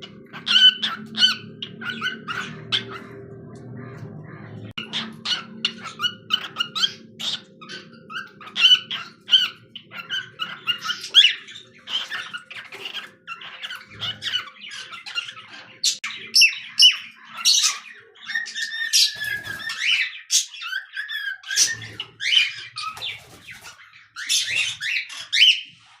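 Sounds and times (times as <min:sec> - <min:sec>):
cockatiel chirping and whistling: 0:04.8 - 0:15.4.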